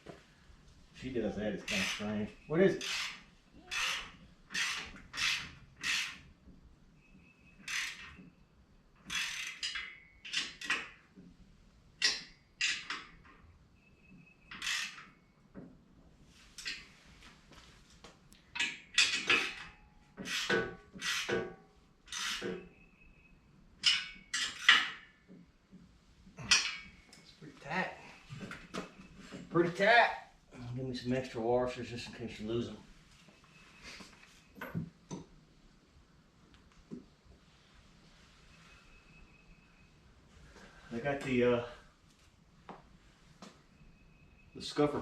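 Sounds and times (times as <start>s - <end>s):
ratchet wrench rasping: 1.7s - 2.2s, 2.8s - 6.2s, 7.6s - 8.2s, 9.0s - 10.8s, 14.6s - 15.1s, 20.2s - 21.4s, 22.1s - 22.5s.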